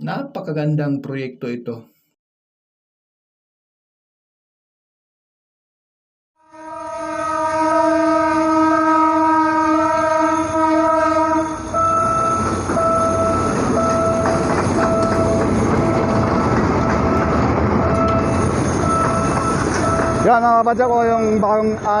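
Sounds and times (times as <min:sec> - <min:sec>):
train horn: 0:06.4 - 0:12.4
train rumbling past: 0:06.6 - 0:22.0
repeating beeping tone: 0:11.8 - 0:21.6.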